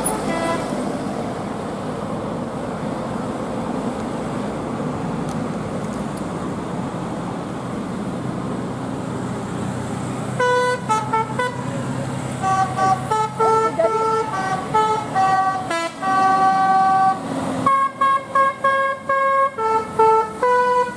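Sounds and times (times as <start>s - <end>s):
musical bus horn: 0.0s - 0.8s, 10.4s - 11.7s, 12.3s - 20.9s
road traffic noise: 0.0s - 20.9s.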